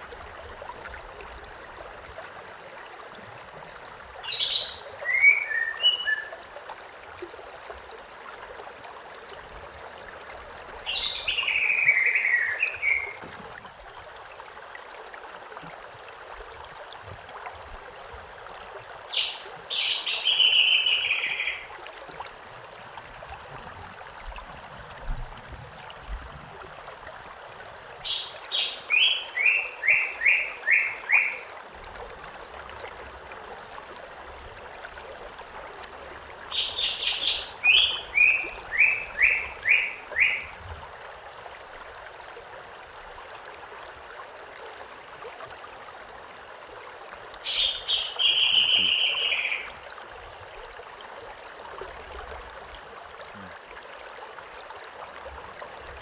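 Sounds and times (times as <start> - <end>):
stream rushing: 0.0 - 56.0
songbird singing: 4.2 - 6.4, 10.8 - 13.2, 19.1 - 21.7, 28.0 - 31.5, 36.4 - 40.5, 47.4 - 49.8.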